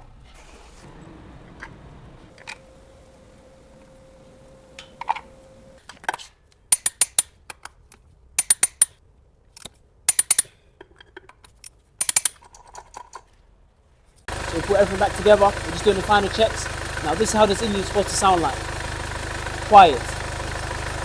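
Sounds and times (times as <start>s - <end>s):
metallic clicks and clinks: 6.7s - 9.0s, 9.6s - 13.3s.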